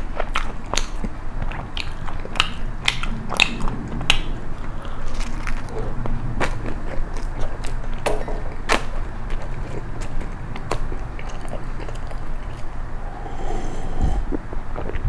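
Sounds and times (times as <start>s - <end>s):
chewing crisp toast: 0.0s - 13.3s
steady low hum: 11.0s - 15.0s.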